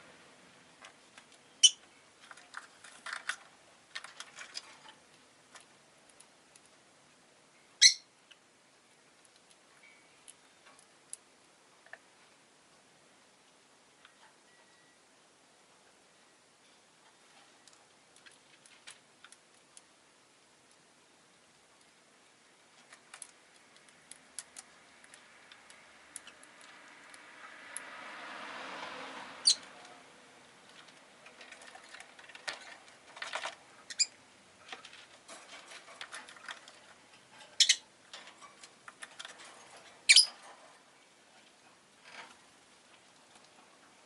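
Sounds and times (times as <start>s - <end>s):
lovebird chirping: 1.5s - 1.8s, 7.7s - 8.1s, 29.4s - 29.8s, 33.9s - 34.2s, 37.6s - 37.9s, 40.1s - 40.4s.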